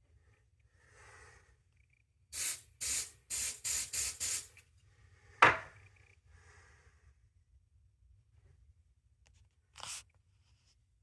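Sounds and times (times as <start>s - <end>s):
aerosol can hissing: 2.4s - 4.6s.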